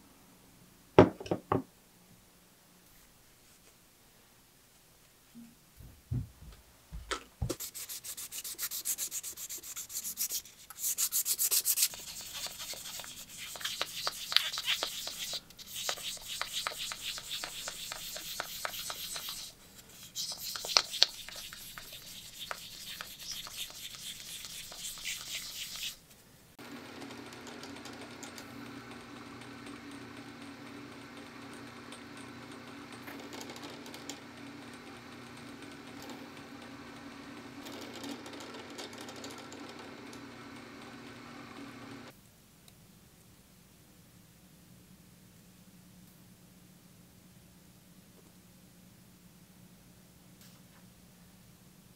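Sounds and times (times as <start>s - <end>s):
abrasive rubbing strokes: 7.5s - 26.0s
small electric motor humming: 26.6s - 42.1s.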